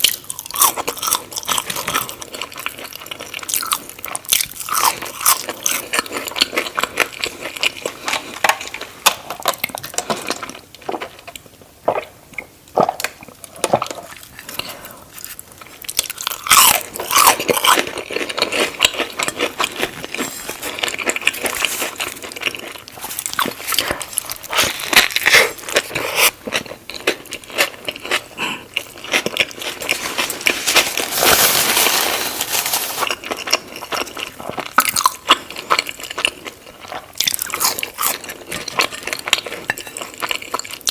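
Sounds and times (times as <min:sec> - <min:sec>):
crunchy bites and chewing: 0:00.0 - 0:07.5, 0:15.1 - 0:31.8, 0:33.0 - 0:39.4.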